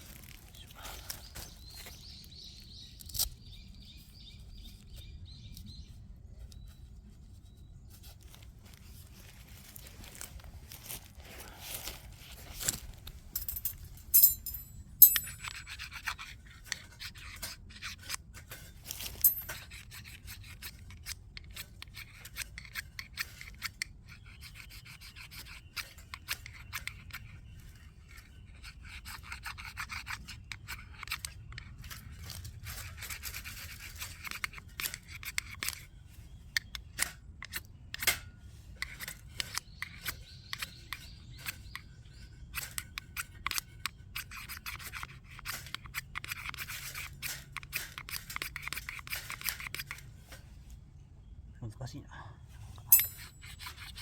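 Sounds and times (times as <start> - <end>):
rubbing and scraping: 7.3 - 35.9, 38.5 - 50.7, 53.1 - 54.0.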